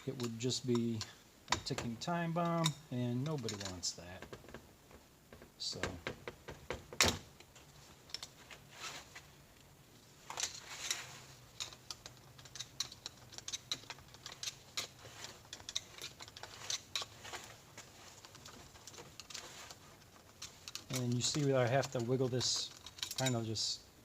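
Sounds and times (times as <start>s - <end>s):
metal clutch plates clicking: 11.5s - 23.6s.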